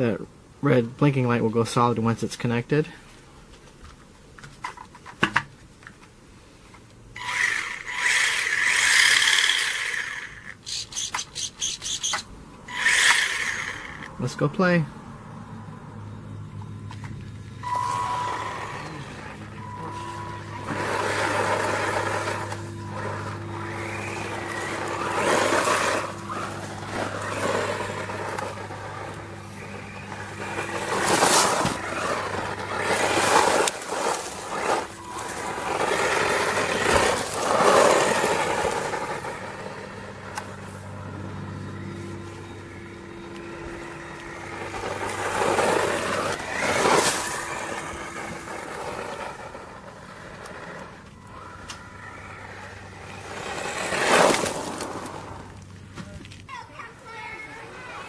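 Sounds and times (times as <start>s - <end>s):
tyres scraping over ground: 1.6s - 14.9s, 15.7s - 58.0s
electric motor whirring: 7.2s - 14.2s, 17.5s - 55.6s
steady low hum: 14.8s - 56.5s.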